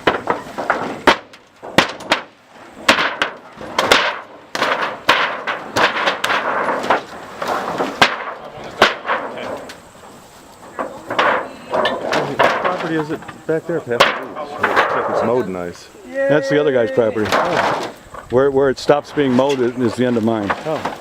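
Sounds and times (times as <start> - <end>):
panel tearing with bangs and cracks: 0.0 - 9.8, 10.7 - 13.3, 17.1 - 18.0, 19.1 - 21.0.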